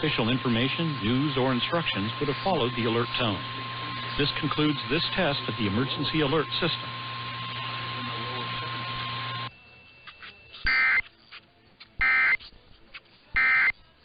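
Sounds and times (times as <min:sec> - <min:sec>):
shrill digital squawks: 0:10.6 - 0:11.0, 0:12.0 - 0:12.4, 0:13.4 - 0:13.7.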